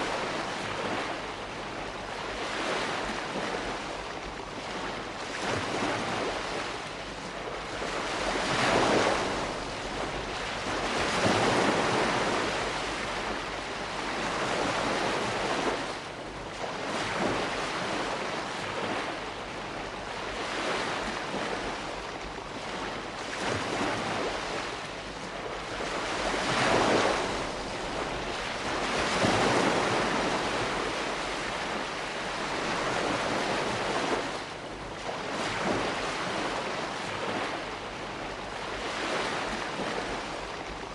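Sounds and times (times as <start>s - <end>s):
small waves washing in: 0.0s - 40.9s.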